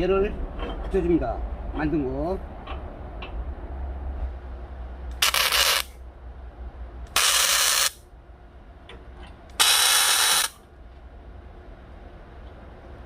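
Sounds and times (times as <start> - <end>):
electric welding crackling hiss: 5.1 - 6.0, 7.1 - 8.0, 9.6 - 10.6.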